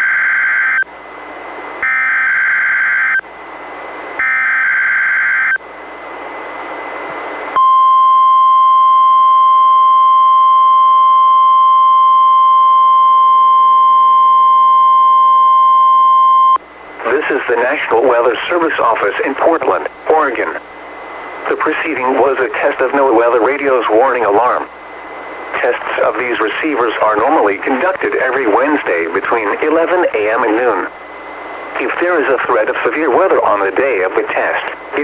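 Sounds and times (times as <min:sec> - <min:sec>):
steady warning alarm tone: 0:00.0 - 0:01.0, 0:01.8 - 0:03.4, 0:04.2 - 0:05.6, 0:07.6 - 0:35.0
radio hiss: 0:16.9 - 0:35.0.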